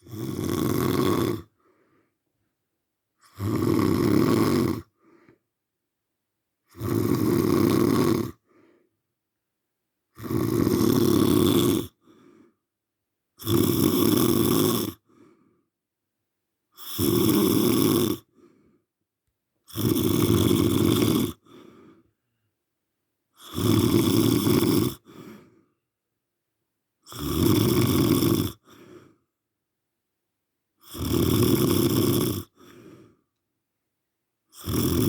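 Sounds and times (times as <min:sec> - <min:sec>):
loud rasping snoring: 0:00.0 - 0:01.6, 0:03.2 - 0:05.0, 0:06.7 - 0:08.5, 0:10.1 - 0:12.4, 0:13.4 - 0:15.4, 0:16.8 - 0:18.6, 0:19.6 - 0:22.0, 0:23.4 - 0:25.6, 0:27.0 - 0:29.2, 0:30.8 - 0:33.2, 0:34.5 - 0:35.0
faint breath sound: 0:01.4 - 0:02.3, 0:04.9 - 0:05.5, 0:08.4 - 0:09.0, 0:12.0 - 0:12.7, 0:15.0 - 0:15.7, 0:18.2 - 0:18.9, 0:21.4 - 0:22.5, 0:25.0 - 0:25.8, 0:28.6 - 0:29.4, 0:32.5 - 0:33.4.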